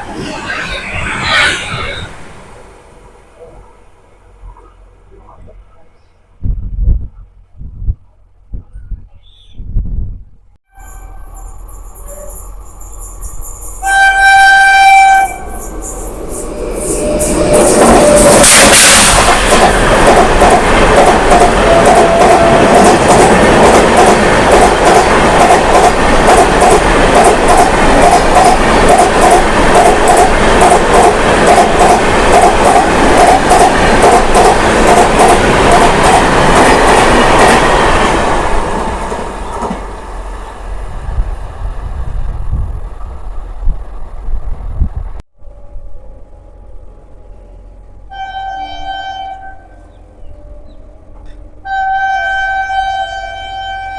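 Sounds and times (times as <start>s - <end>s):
train wheels clattering: 15.5s - 40.0s.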